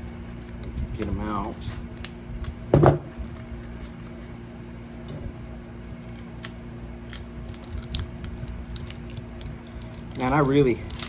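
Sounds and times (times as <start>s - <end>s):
steady electrical hum: 0.0s - 11.0s
short loud thump: 2.8s - 3.1s.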